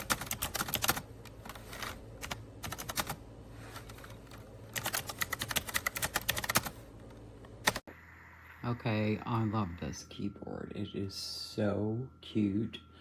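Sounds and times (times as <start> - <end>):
typing on mechanical keyboard: 0.0 - 1.1, 2.2 - 3.2, 4.3 - 6.8.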